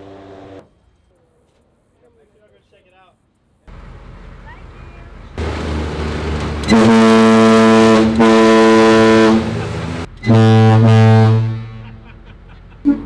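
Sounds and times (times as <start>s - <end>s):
air horn blasts: 6.6s - 11.8s.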